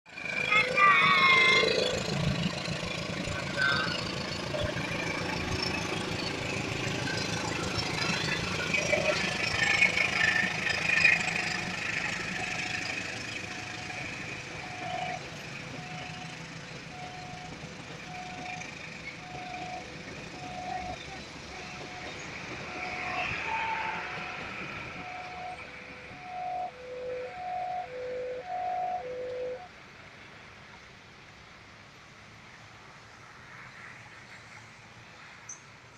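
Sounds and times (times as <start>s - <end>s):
train rumbling past: 0.1s - 35.9s
level crossing alarm beeps: 3.2s - 29.7s.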